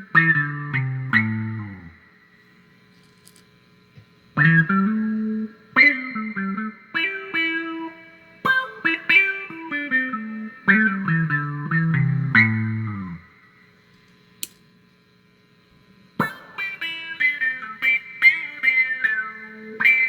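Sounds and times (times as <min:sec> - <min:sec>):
electric guitar with auto-wah: 0:00.0 - 0:02.3, 0:04.3 - 0:13.6, 0:16.1 - 0:20.0.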